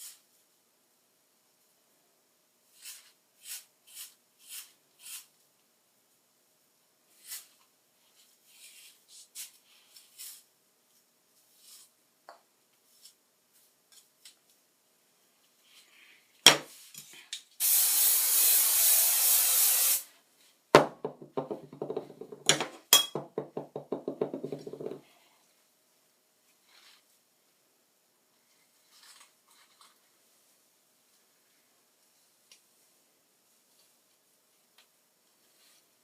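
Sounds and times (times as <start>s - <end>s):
hairspray hissing: 17.6s - 20.1s.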